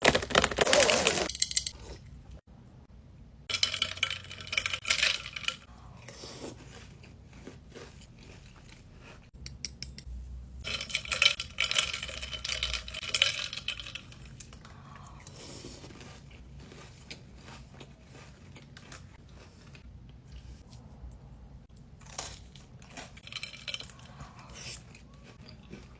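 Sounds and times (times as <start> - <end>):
crinkling snack packaging: 0.0 - 1.3.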